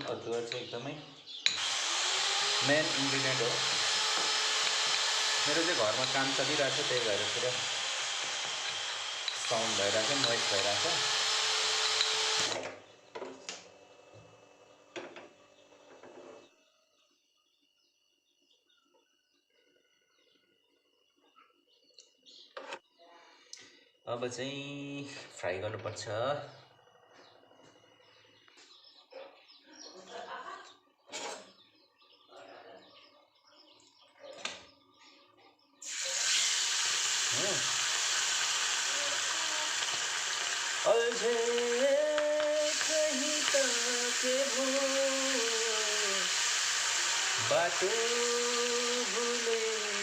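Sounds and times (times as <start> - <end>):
birds chirping: 0.0 - 4.6, 12.7 - 36.2, 37.2 - 50.0
power tool whining: 1.4 - 12.9, 35.8 - 50.0
food sizzling in hot oil: 1.6 - 11.1, 35.8 - 50.0.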